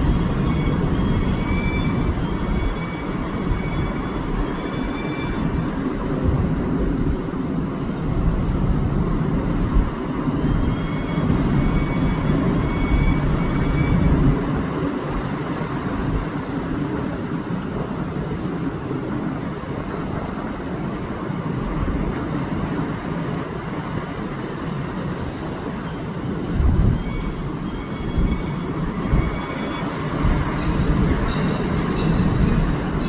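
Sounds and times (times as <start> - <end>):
faint high whistling tones: 0.0 - 5.6, 10.4 - 14.3, 26.9 - 33.0
steady rumbling noise: 0.0 - 33.0.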